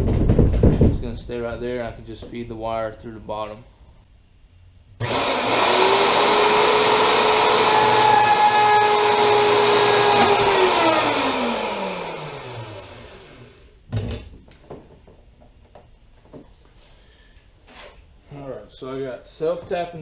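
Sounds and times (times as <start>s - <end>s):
electric motor running: 5.0s - 13.6s.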